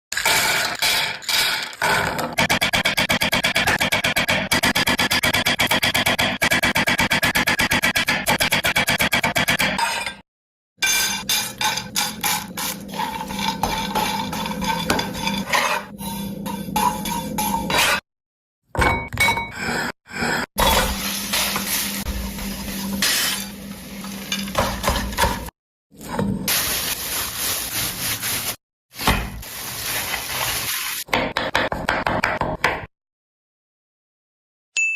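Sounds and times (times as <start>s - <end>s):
utensils scraping a pan: 10.8s - 18.0s, 19.6s - 26.7s
food sizzling in a pan: 20.8s - 24.8s, 29.4s - 31.1s.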